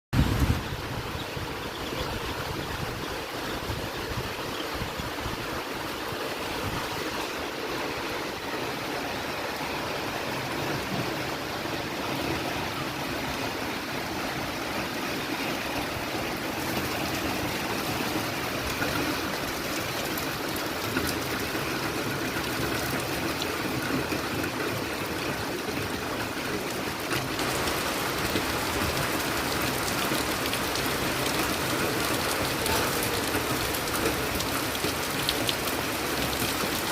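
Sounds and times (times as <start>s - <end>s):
heavy rain pouring: 0.2s - 36.9s.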